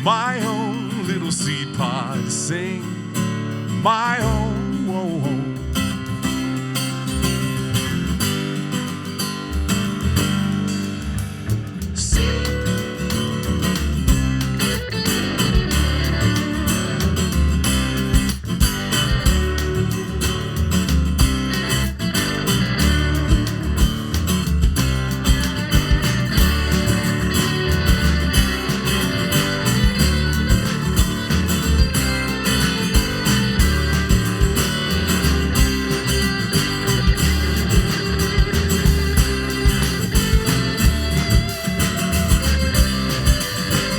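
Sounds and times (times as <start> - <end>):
bass guitar: 0.0 - 43.9
drums and cymbals: 9.7 - 43.9
electric guitar: 10.2 - 43.9.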